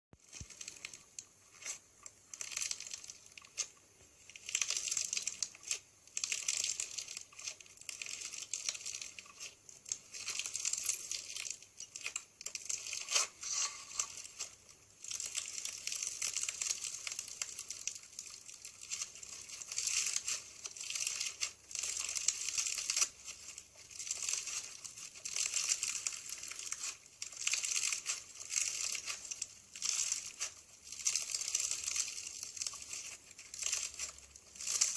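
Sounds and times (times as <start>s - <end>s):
slime crackling and popping: 0.2s - 34.9s.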